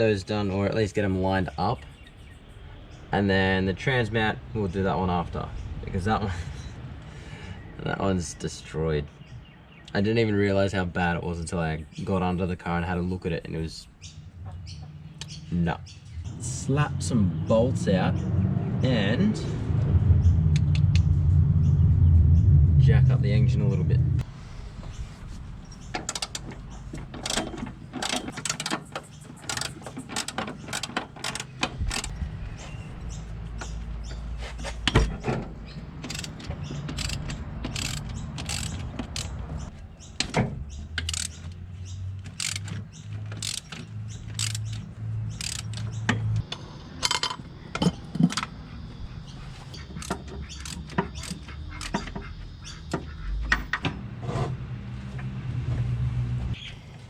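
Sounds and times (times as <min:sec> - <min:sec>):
metal tools clanking: 0:25.9 - 0:32.1, 0:34.6 - 0:39.7, 0:42.3 - 0:48.6
ratchet wrench clicking: 0:27.2 - 0:32.1, 0:36.0 - 0:39.4, 0:41.0 - 0:41.4, 0:42.3 - 0:42.8, 0:43.4 - 0:46.0, 0:50.0 - 0:52.0.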